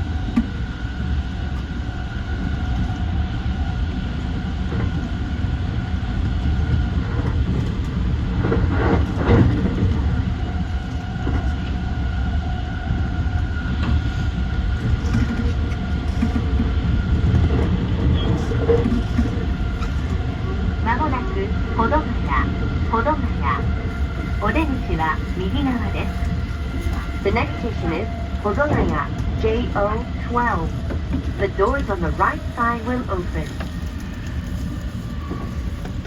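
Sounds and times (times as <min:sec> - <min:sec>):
train wheels rumbling on rail: 0:00.0 - 0:36.0
train whine: 0:00.0 - 0:36.0.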